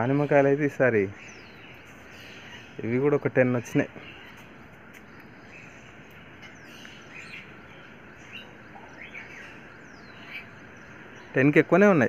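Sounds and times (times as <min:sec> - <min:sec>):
birds chirping: 0:00.0 - 0:12.0
outdoor background noise: 0:00.0 - 0:12.0.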